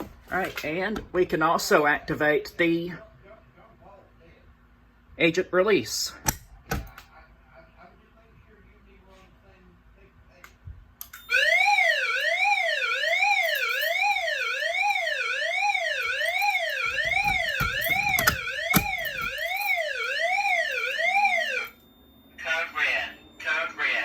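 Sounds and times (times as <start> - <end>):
fire alarm siren tone sweeping: 11.2 - 24.0.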